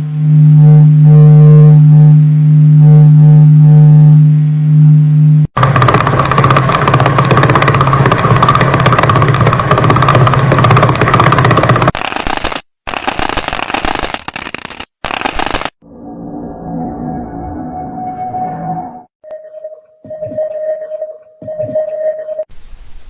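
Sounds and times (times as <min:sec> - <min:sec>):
soft tonal drone: 0:00.0 - 0:11.9, 0:15.8 - 0:21.2
steady low hum: 0:00.0 - 0:12.0
crackling static: 0:05.6 - 0:15.8.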